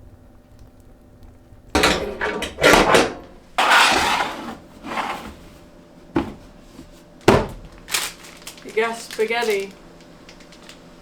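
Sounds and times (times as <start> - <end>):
clattering knocks and scrapes: 1.8 - 7.0.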